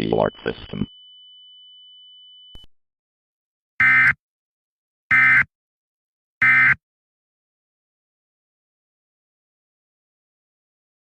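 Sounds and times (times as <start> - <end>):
faint steady high tone: 0.0 - 2.6.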